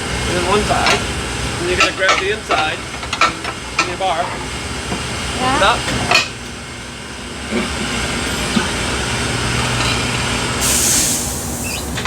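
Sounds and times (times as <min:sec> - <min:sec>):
compressed air hiss: 0:10.6 - 0:12.0.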